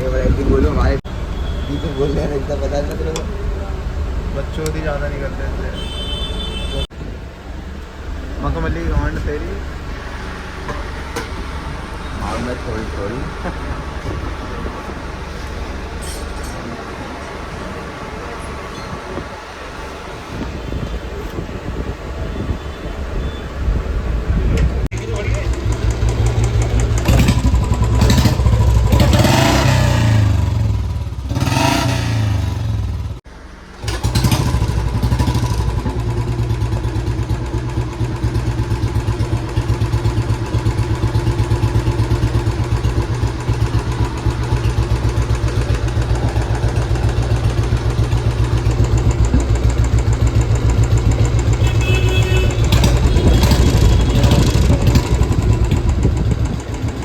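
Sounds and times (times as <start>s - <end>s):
motorcycle engine idling: 0.0s - 18.4s, 24.5s - 57.0s.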